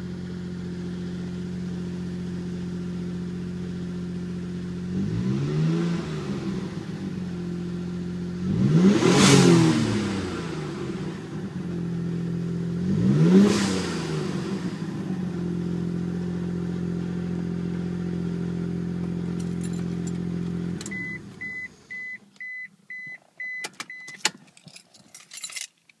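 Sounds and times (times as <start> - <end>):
car engine idling and revving: 0.0 - 24.9
keys jingling: 19.4 - 20.2, 23.7 - 26.0
car warning chime beeping: 20.8 - 24.3.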